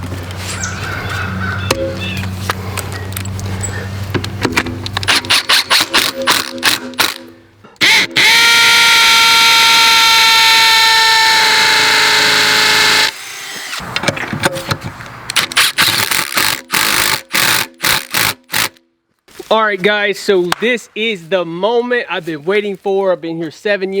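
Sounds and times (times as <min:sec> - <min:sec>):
hammer drill motor whining: 0:05.0 - 0:07.2, 0:07.8 - 0:13.8, 0:15.6 - 0:18.8.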